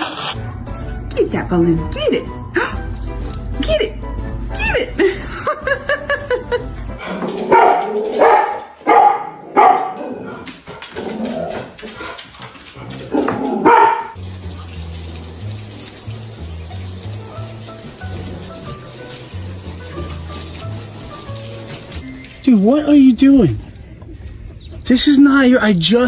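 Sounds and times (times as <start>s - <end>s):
dog barking: 7.4s - 10.4s, 13.2s - 14.2s.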